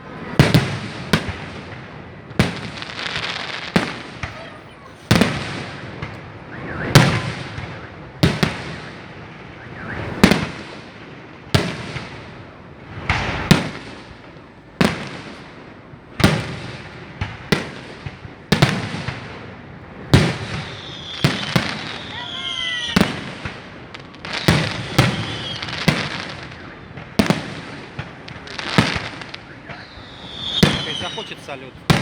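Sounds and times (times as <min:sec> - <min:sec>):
fireworks bursting with bangs: 0:00.0 - 0:32.0
fireworks hiss: 0:12.9 - 0:18.0, 0:20.0 - 0:32.0.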